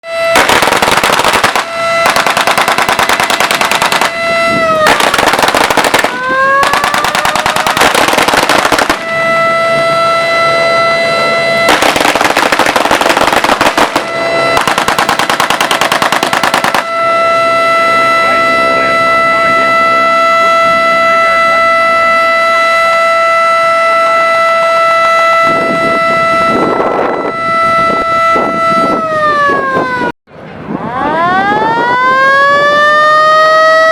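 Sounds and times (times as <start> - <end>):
air-raid siren wailing: 0.0 - 33.9
machine-gun fire: 0.4 - 4.1, 4.9 - 9.0, 11.7 - 14.0, 14.6 - 16.8.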